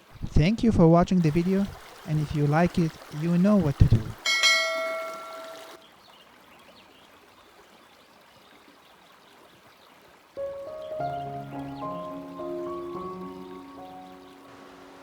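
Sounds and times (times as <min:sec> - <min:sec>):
creek water flowing: 0:00.0 - 0:15.0
chime ringing: 0:04.2 - 0:05.8.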